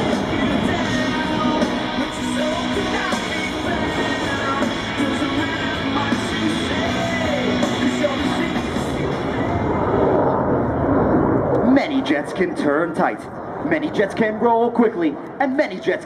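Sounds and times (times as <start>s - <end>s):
rock music with singing and guitar: 0.0s - 10.2s.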